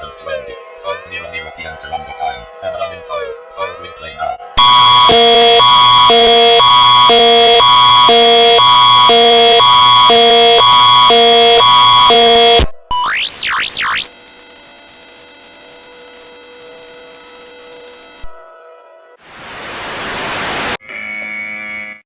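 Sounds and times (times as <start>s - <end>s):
steady shrill tone: 4.6s - 14.3s
constant high tone: 4.6s - 18.4s
electronic alert beeps: 4.6s - 18.4s
electronic sweep: 4.6s - 18.4s.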